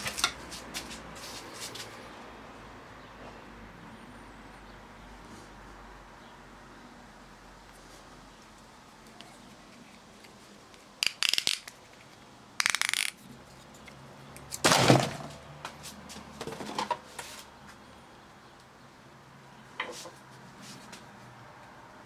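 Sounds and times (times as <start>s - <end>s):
small hard objects rattling: 11.0s - 11.8s, 12.6s - 13.2s.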